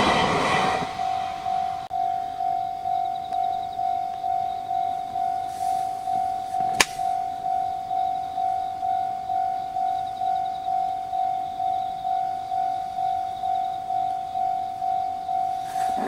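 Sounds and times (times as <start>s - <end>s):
level crossing bell ringing: 1.9s - 16.0s
sharp click: 6.7s - 7.0s.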